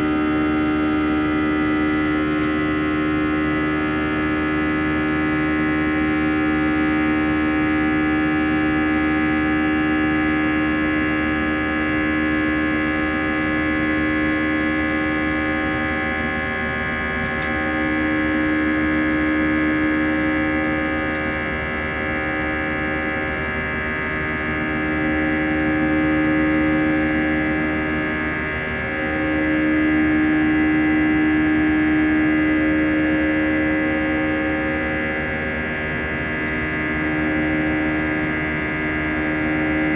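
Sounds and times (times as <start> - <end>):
jet engine drone in cabin: 0.0 - 39.9.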